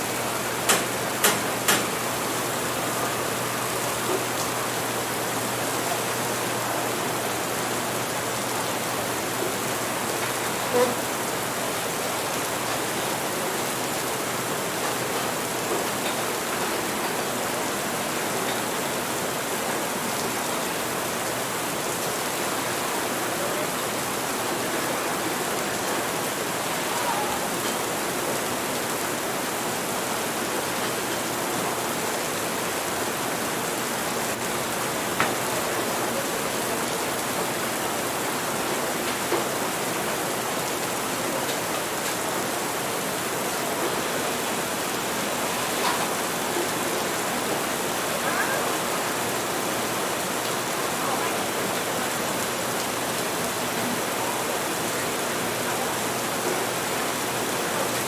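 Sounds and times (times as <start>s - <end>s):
rain hiss: 0.0s - 58.0s.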